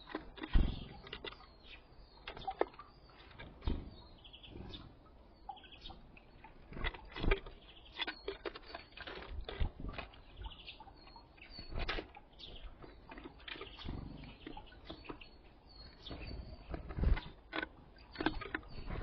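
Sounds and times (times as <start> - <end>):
birds tapping and pecking: 0.0 - 19.0
songbirds chirping: 0.0 - 19.0
wings fluttering: 11.5 - 15.3, 15.9 - 19.0.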